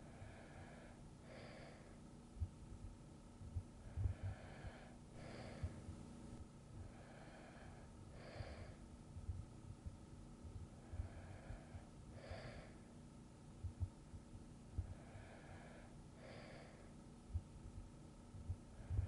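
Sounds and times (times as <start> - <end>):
person breathing softly in sleep: 0.0 - 2.1, 3.8 - 6.0, 6.8 - 8.9, 10.8 - 13.0, 14.8 - 17.0, 18.7 - 19.0
faint low thumps: 2.4 - 4.8, 9.1 - 11.6.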